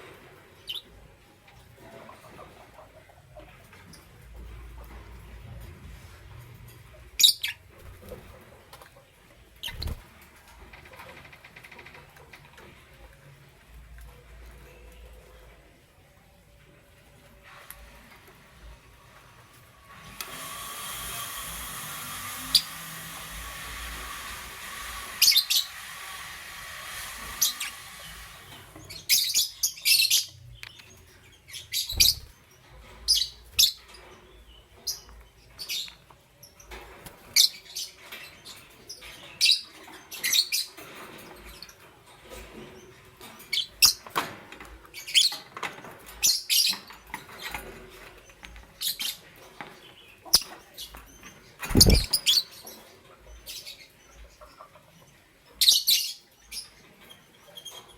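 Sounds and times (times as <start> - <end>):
lovebirds chirping: 7.2 - 7.7, 28.8 - 38.2, 49.9 - 54.5.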